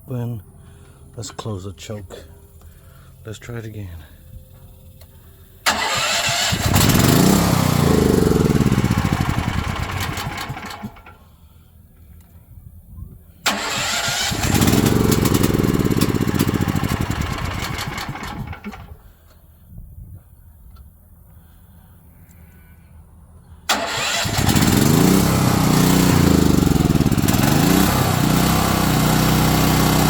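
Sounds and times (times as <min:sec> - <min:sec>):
generator engine cranking: 0:05.6 - 0:11.2, 0:13.4 - 0:19.2, 0:23.7 - 0:30.0.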